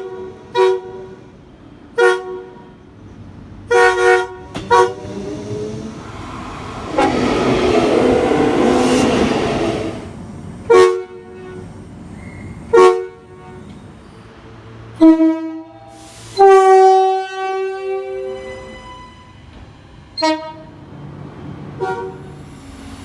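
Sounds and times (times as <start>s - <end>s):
train horn blasts: 3.7s - 10.1s, 15.0s - 18.7s, 20.2s - 20.8s, 21.8s - 22.3s
loud rushing noise: 4.8s - 10.9s.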